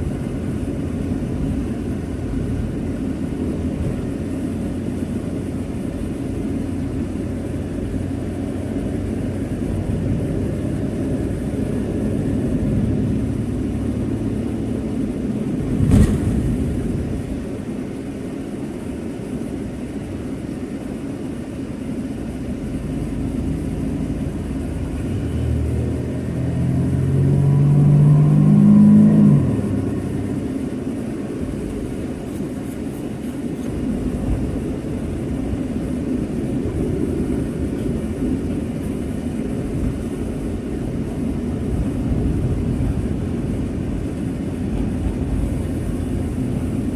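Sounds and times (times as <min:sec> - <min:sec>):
vehicle engine and road noise: 0:00.0 - 0:46.9.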